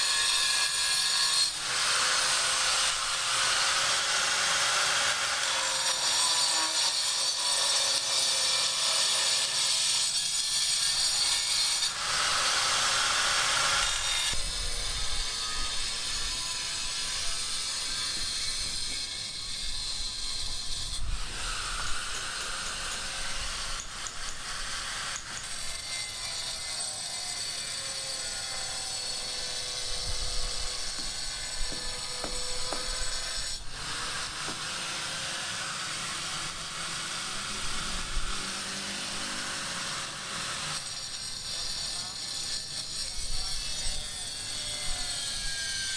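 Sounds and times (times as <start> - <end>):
grinding mechanical tool: 0.0 - 45.9
sharp knocks: 30.9 - 33.4.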